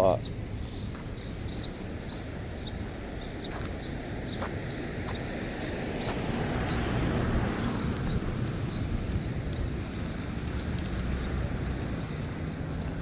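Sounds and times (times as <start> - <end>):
bird chirping: 0.0 - 5.3
vehicle passing: 5.3 - 13.0.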